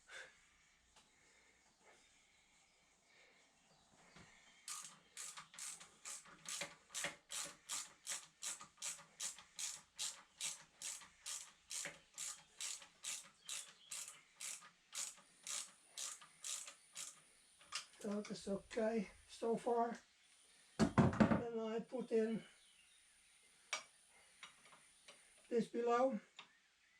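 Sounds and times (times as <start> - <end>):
ratchet wrench clicking: 4.7 - 17.2.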